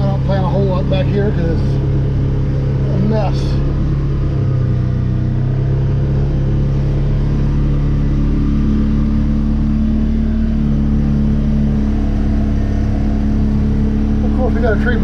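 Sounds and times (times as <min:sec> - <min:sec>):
vehicle engine running under load: 0:00.0 - 0:15.0.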